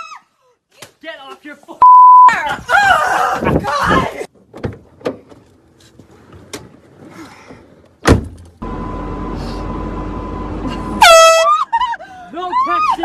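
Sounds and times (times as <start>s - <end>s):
car door thump: 8.0s - 8.5s.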